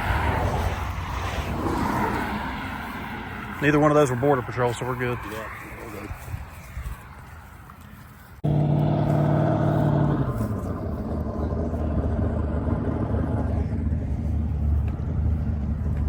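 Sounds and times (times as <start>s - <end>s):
car engine revving: 0.0s - 4.2s, 8.4s - 16.0s.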